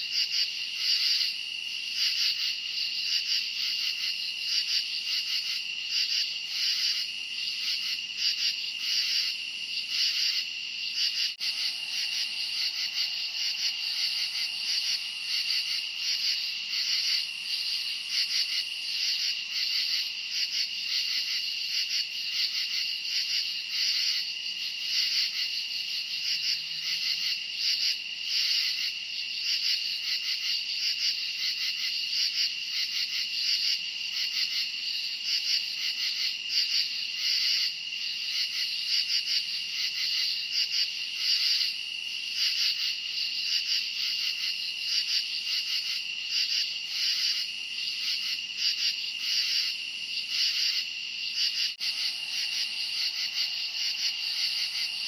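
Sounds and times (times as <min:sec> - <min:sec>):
crickets chirping: 0:00.0 - 0:55.0.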